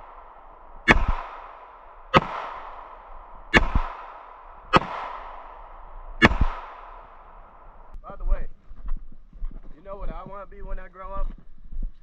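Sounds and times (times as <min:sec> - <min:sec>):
dull low thump: 0:00.0 - 0:08.0
gunshots: 0:00.0 - 0:08.0.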